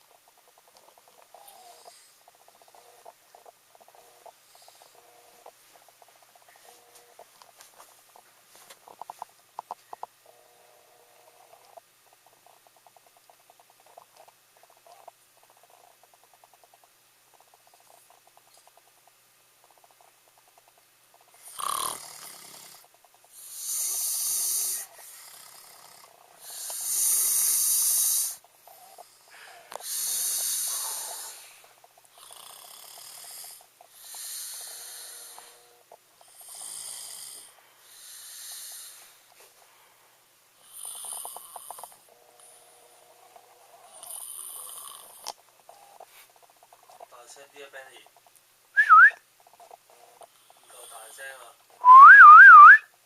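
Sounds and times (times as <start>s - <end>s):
man snoring: 21.4s - 31.6s, 32.2s - 39.0s, 40.6s - 42.0s, 43.8s - 45.3s.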